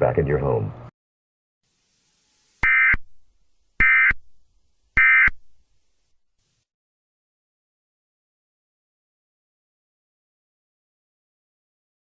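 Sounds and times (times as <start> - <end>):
buzzing digital data bursts: 1.6 - 6.6.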